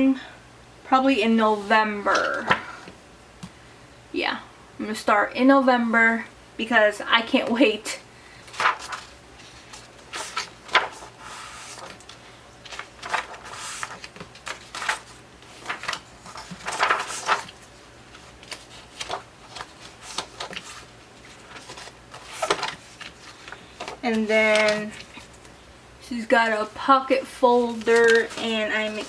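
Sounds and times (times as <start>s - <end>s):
paper pages rustling: 1.5s - 3.0s, 8.4s - 25.6s, 27.5s - 29.0s
paper sliding: 8.5s - 25.3s.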